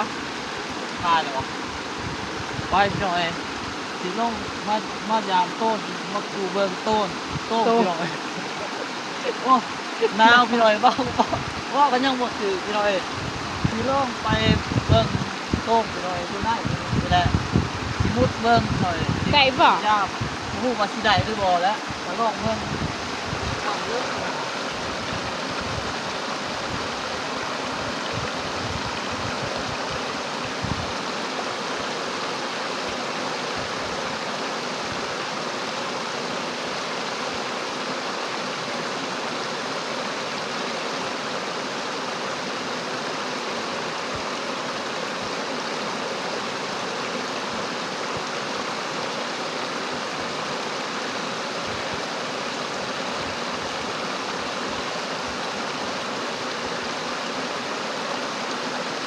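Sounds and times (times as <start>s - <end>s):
rushing floodwater: 0.0s - 59.0s.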